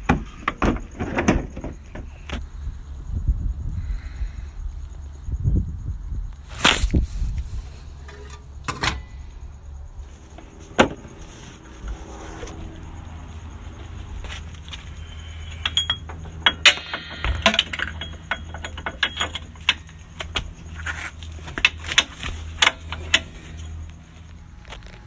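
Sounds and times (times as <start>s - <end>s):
steady low hum: 1.7s - 25.0s
metal tools clinking on metal: 14.8s - 23.7s.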